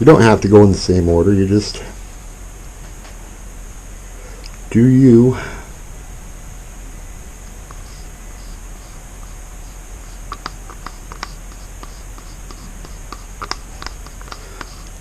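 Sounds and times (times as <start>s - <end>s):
steady low hum: 0.0s - 15.0s
plastic paint cups clicking: 10.1s - 15.0s.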